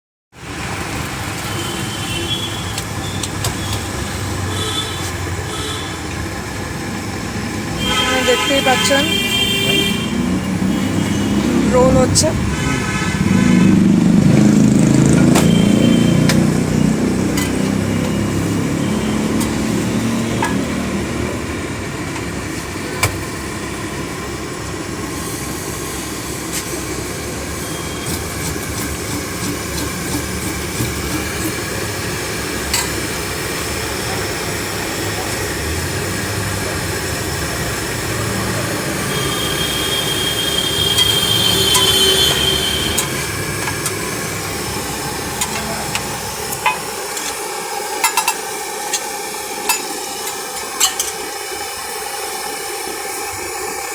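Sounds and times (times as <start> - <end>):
traffic: 0.3 - 53.9
held high horn tone: 1.3 - 21.6, 25.1 - 31.6, 36.8 - 47.4.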